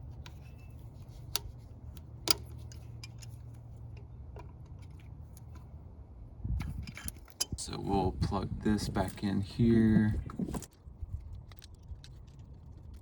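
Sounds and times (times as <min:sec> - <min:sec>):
rubber hose and clamp clicking: 0:00.0 - 0:05.7.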